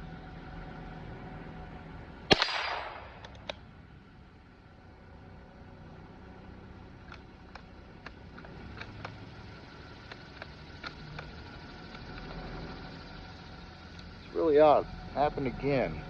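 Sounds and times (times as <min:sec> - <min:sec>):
steady low hum: 0:00.0 - 0:16.0
light metallic clicks: 0:03.1 - 0:03.7, 0:07.0 - 0:12.7.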